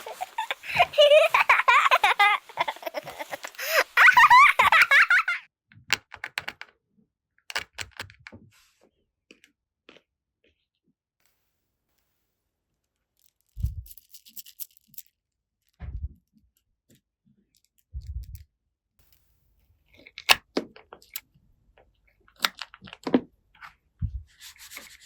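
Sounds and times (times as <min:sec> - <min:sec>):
plastic pieces clicking and tapping: 0:05.8 - 0:06.7, 0:07.5 - 0:08.4, 0:21.8 - 0:23.7
toy pieces set down thumping: 0:05.9 - 0:06.7, 0:07.5 - 0:08.4.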